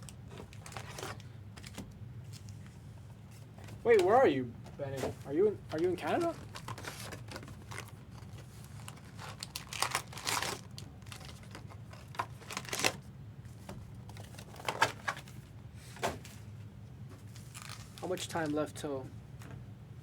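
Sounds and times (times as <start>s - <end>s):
card packaging crinkling and tearing: 0.1s - 1.8s, 5.7s - 13.1s, 14.1s - 15.4s, 17.3s - 18.6s.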